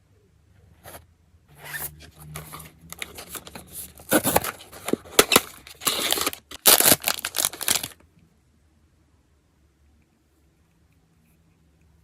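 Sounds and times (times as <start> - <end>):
wrapper crinkling and tearing: 2.4 - 8.0.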